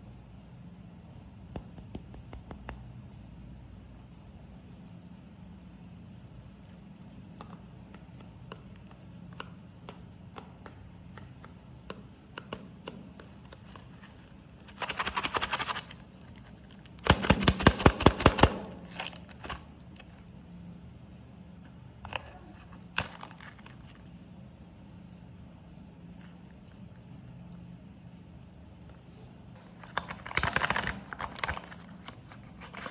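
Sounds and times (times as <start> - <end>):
packaging clicks and rustles: 29.7 - 32.9.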